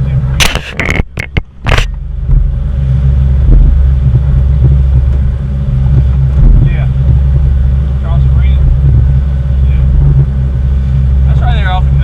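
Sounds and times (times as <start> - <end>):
motorboat engine rumble: 0.0 - 12.0
sharp clicks and knocks: 0.4 - 2.4.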